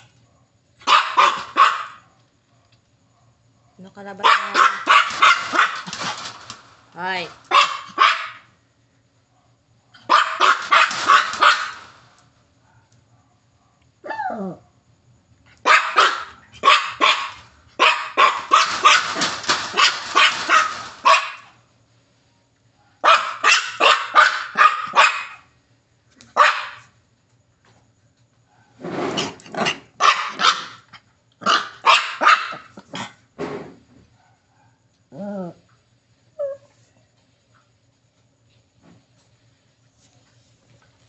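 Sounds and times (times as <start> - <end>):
dog barking: 0.0 - 6.1, 7.4 - 8.6, 9.3 - 11.9, 12.6 - 14.8, 15.6 - 21.6, 22.8 - 25.6, 26.3 - 27.0, 28.4 - 28.8, 29.6 - 33.2, 34.1 - 34.9.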